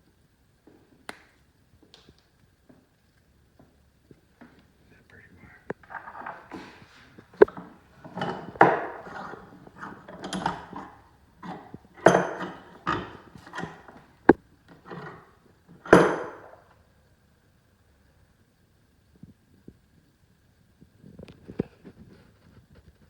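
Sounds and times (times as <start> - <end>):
tools and parts clattering: 5.8 - 16.8.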